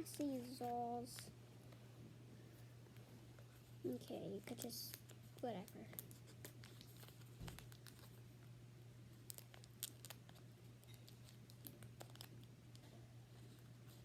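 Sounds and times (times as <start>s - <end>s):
low steady hum: 0.0s - 14.0s
plastic bag clicks and rustles: 9.1s - 12.8s.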